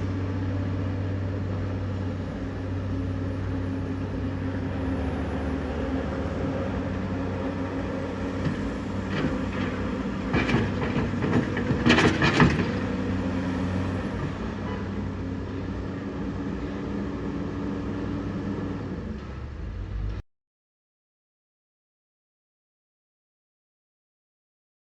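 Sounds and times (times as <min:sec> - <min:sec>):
excavator diesel engine running: 0:00.0 - 0:20.2
excavator bucket clanking: 0:08.5 - 0:13.1.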